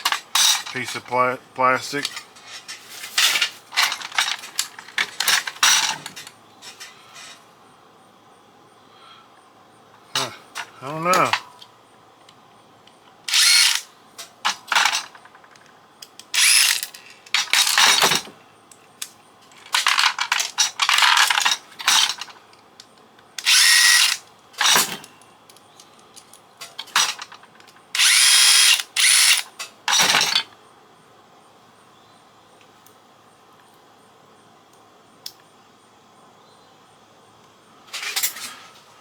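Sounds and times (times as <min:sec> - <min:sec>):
power tool running in bursts: 0:13.3 - 0:13.8, 0:23.4 - 0:24.2, 0:28.0 - 0:29.4.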